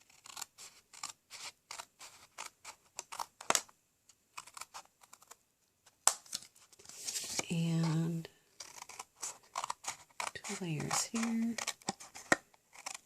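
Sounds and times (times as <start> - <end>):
snips cutting cardstock: 7.3 - 13.0.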